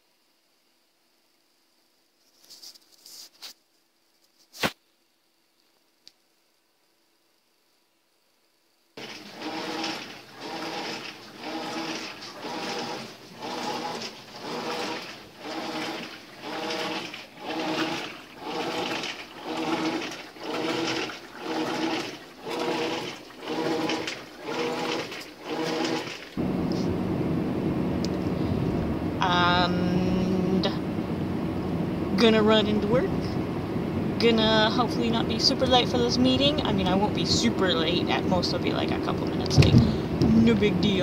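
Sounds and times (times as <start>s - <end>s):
washing machine sloshing: 9.0s - 27.3s, 28.1s - 41.0s
vehicle cabin rumble: 26.4s - 41.0s.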